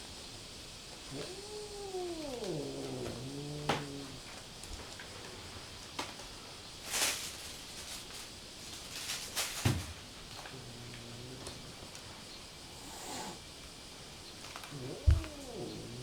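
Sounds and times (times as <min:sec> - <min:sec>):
cat hissing: 0:01.0 - 0:04.3, 0:10.4 - 0:13.6, 0:14.6 - 0:16.0
cat growling: 0:01.0 - 0:04.4, 0:10.3 - 0:13.5, 0:14.5 - 0:16.0
thump: 0:09.6 - 0:10.0.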